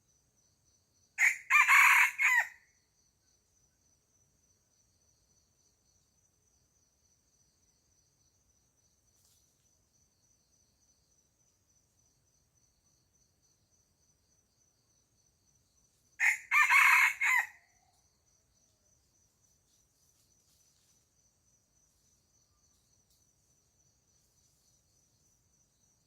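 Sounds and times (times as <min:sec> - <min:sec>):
high insect trill: 0:00.0 - 0:26.0
rooster crowing: 0:01.2 - 0:02.6, 0:16.2 - 0:17.7.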